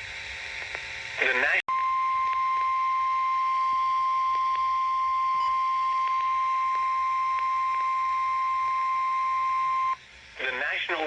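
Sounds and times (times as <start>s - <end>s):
faint radio static crackles: 0.0s - 2.8s, 5.9s - 11.0s
weather radio alarm tone: 1.3s - 10.6s.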